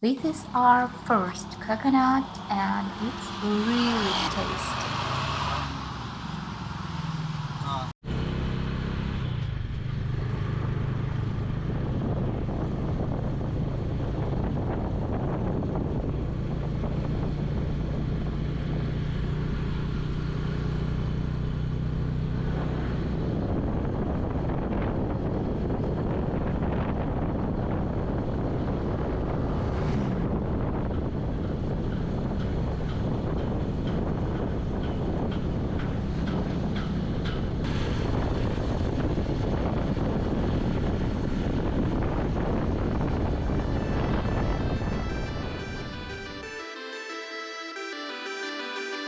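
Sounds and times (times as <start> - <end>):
engine humming: 0.0 - 49.0
wind buffeting microphone: 9.6 - 46.5.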